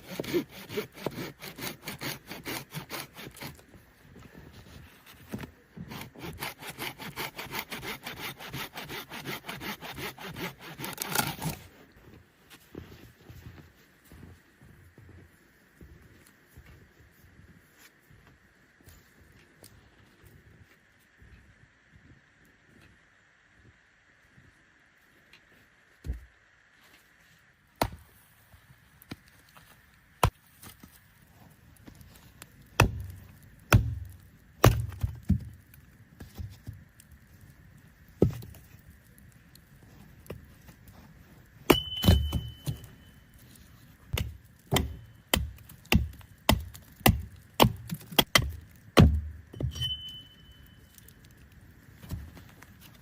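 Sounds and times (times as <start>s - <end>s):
metal ringing tone: 41.7s - 43.3s, 49.5s - 51.0s
sharp knocks and thuds: 44.2s - 49.8s.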